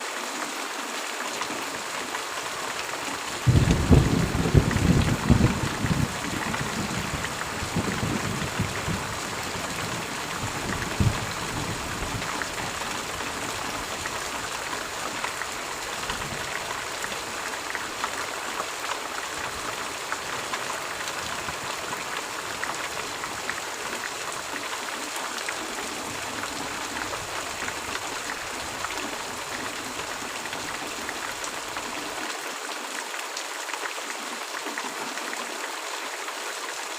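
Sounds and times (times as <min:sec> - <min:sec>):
steady rain falling: 0:00.0 - 0:36.9
thunder rumbling: 0:03.4 - 0:12.8.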